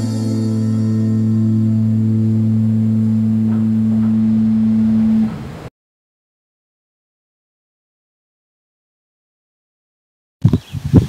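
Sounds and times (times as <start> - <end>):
held low musical note: 0.0 - 5.5.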